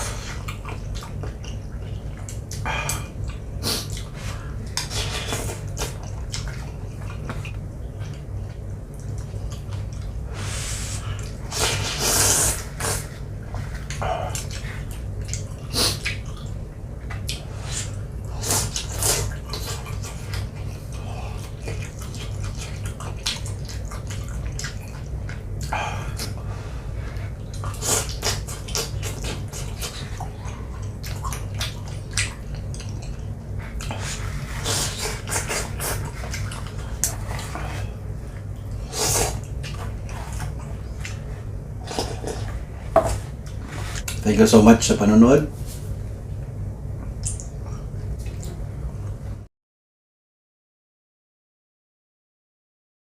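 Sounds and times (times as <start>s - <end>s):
steady low hum: 0.0s - 49.5s
noodles slurped and chewed: 27.1s - 37.9s.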